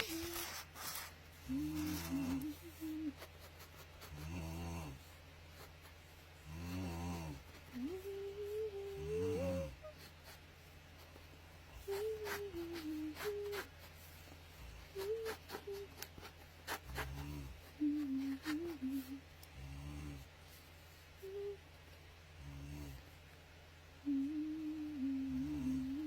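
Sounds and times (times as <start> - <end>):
thin hummed tune: 0.0 - 4.9, 6.9 - 10.1, 11.8 - 13.9, 14.7 - 16.3, 17.0 - 20.2, 21.2 - 21.8, 24.0 - 26.0
person snoring: 6.4 - 9.8.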